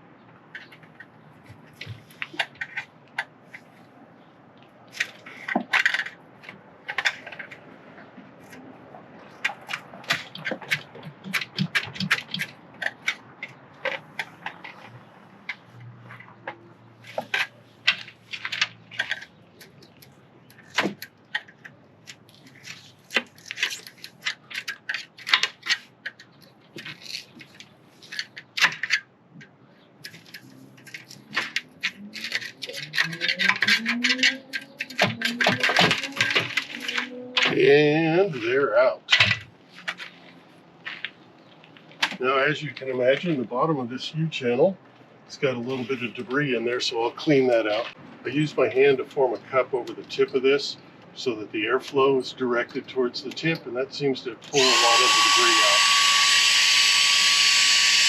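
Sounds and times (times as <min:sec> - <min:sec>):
plexiglass panel being pried loose: 0:30.1 - 0:36.7.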